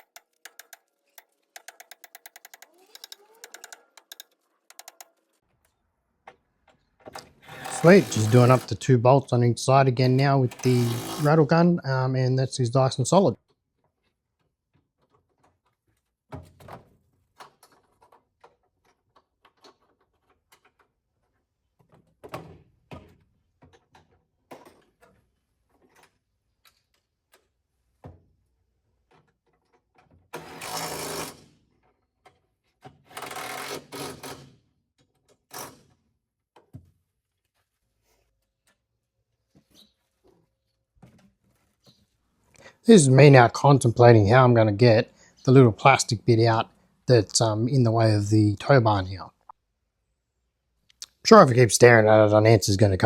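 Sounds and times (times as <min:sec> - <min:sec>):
impact wrench rattling: 0:00.0 - 0:05.4, 0:07.2 - 0:08.8, 0:10.1 - 0:11.4, 0:33.0 - 0:34.5
tools knocking and clicking: 0:00.0 - 0:08.7, 0:10.5 - 0:11.3.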